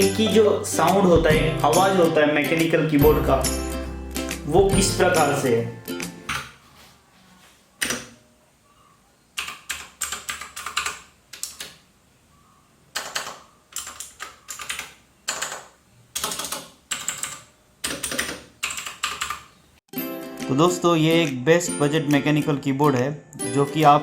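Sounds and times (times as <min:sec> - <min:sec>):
mechanical keyboard typing: 0:09.4 - 0:11.8, 0:12.9 - 0:19.5.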